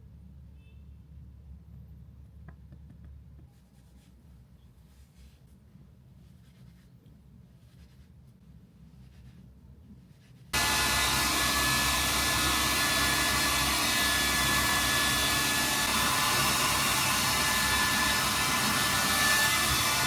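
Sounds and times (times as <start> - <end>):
electric blower motor running: 10.6 - 20.0.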